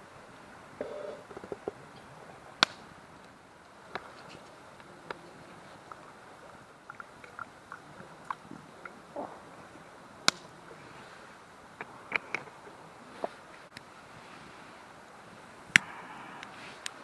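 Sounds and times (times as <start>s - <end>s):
wood fire crackling and popping: 0.8s - 11.1s.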